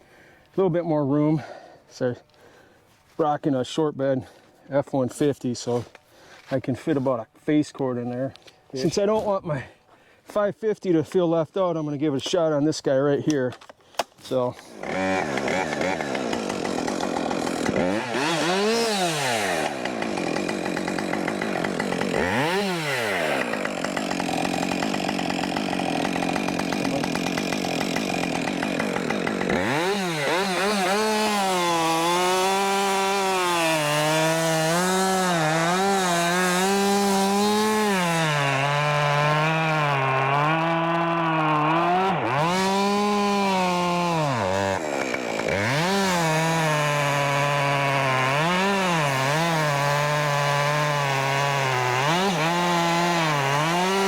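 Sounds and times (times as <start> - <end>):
chainsaw cutting wood: 13.6 - 54.0.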